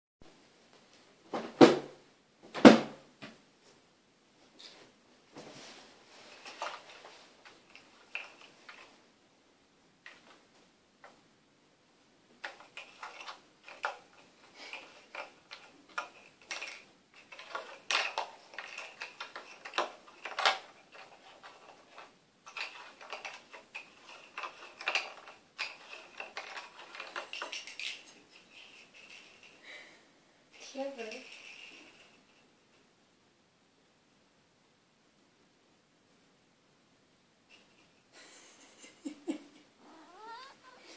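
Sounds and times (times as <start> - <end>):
cat toy clicking and rattling: 12.4 - 29.6.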